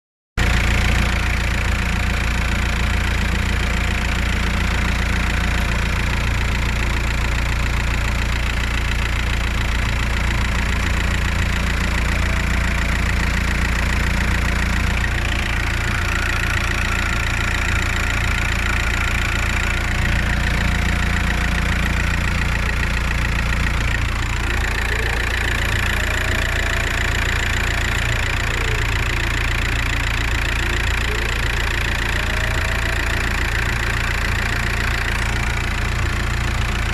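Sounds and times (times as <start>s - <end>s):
engine idling: 0.4s - 36.9s
turbocharger whistle: 24.1s - 36.3s.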